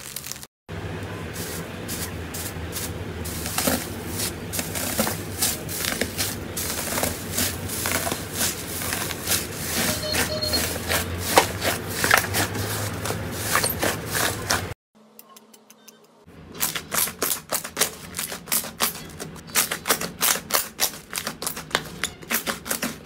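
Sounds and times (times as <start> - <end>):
slime clicking and crackling: 4.6 - 9.4, 16.6 - 23.0.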